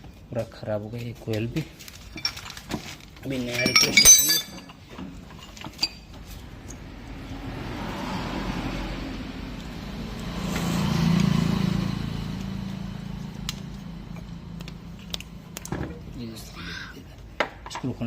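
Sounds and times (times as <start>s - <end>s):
vehicle passing by: 6.1s - 16.6s.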